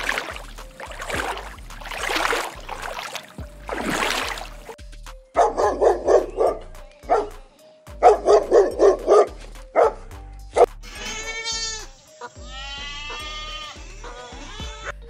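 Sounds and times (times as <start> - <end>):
dog barking: 5.4 - 7.4, 8.0 - 10.7
goat bleating: 10.8 - 14.9.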